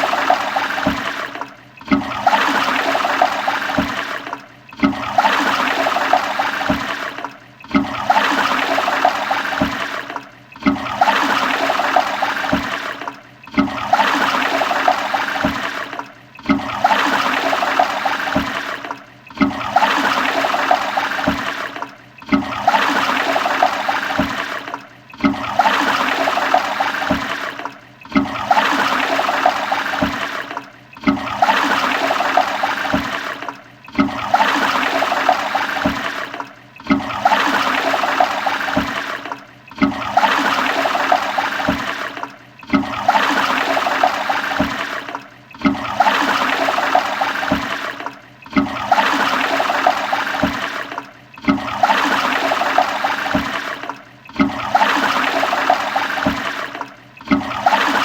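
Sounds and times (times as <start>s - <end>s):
toilet flushing: 0.0s - 58.0s.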